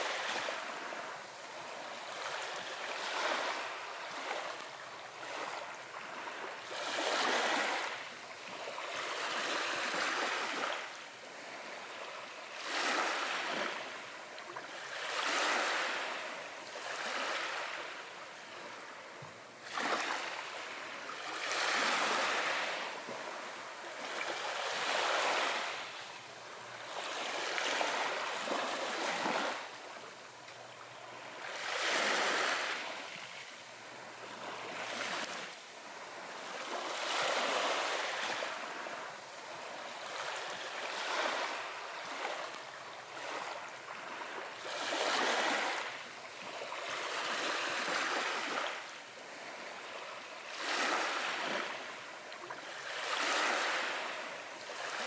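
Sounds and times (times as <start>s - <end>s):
small waves breaking on beach: 0.0s - 55.0s.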